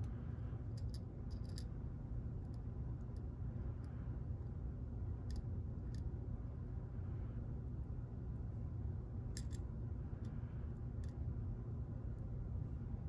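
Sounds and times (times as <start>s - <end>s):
steady low hum: 0.0s - 13.0s
small metal lock parts clicking: 0.8s - 1.7s.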